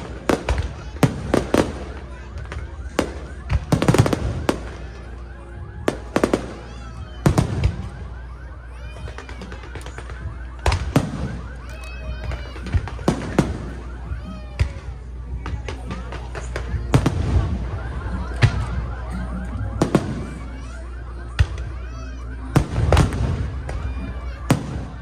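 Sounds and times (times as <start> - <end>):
fireworks bursting with loud bangs: 0.0 - 25.0
steady low rumble: 12.2 - 25.0.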